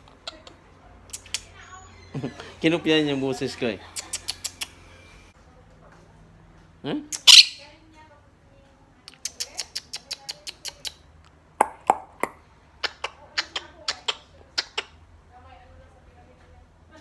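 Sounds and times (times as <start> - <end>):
parrot chirps and clicks: 0.1 - 1.5, 4.0 - 4.8, 7.1 - 7.6, 9.0 - 11.0
parrot squawk: 7.2 - 7.6.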